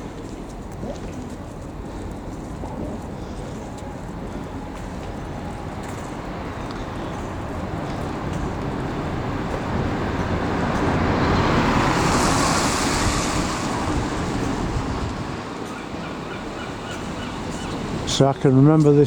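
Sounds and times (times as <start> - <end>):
street traffic: 0.0 - 19.0
vehicle passing close by: 5.5 - 18.1.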